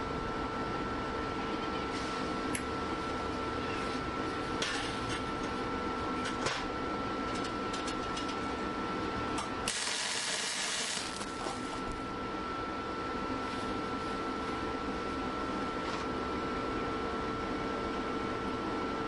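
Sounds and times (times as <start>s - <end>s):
welder humming: 9.4s - 12.0s
welder hiss: 9.7s - 11.6s
welding crackles and clicks: 9.7s - 11.8s.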